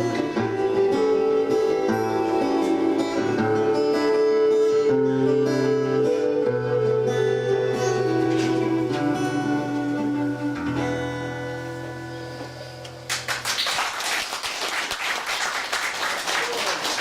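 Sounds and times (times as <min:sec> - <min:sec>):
guitar-led music: 0:00.0 - 0:13.4
audience applause: 0:13.1 - 0:17.0.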